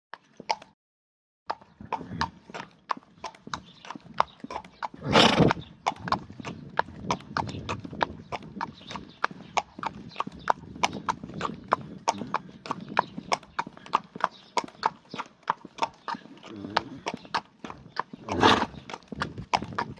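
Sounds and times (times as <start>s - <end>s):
horse hooves clip-clopping: 0.2s - 0.7s, 1.5s - 19.9s
horse snorting: 1.6s - 2.7s, 4.5s - 6.2s, 11.0s - 12.8s, 16.0s - 19.9s.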